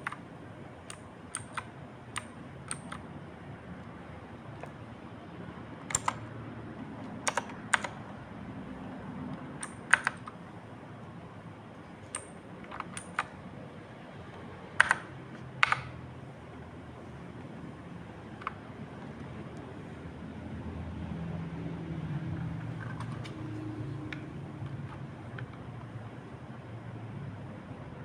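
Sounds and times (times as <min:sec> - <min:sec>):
mechanical keyboard keystrokes: 0:00.0 - 0:03.1, 0:05.8 - 0:06.4, 0:07.0 - 0:08.2, 0:09.3 - 0:10.5, 0:11.9 - 0:13.5, 0:14.2 - 0:16.1, 0:18.2 - 0:19.7, 0:22.4 - 0:26.0.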